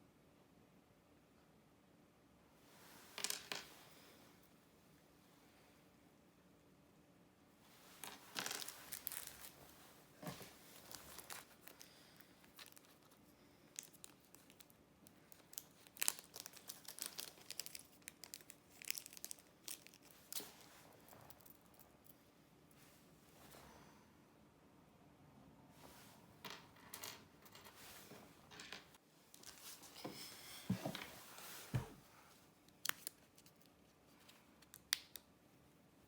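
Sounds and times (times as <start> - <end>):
packaging crinkling and tearing: 8.5 - 9.6, 10.8 - 11.9, 13.8 - 20.7, 32.7 - 33.7.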